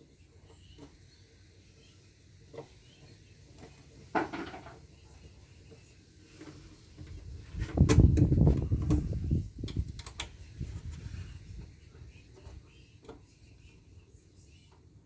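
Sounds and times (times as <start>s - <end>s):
metallic clunk and clatter: 4.1s - 4.8s.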